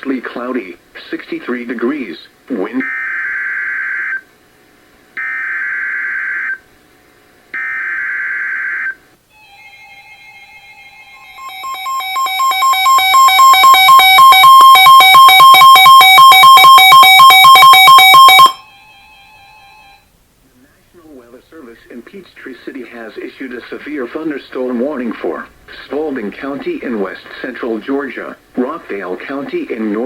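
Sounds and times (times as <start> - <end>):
pulsing warning alert tone: 11.4 - 18.6.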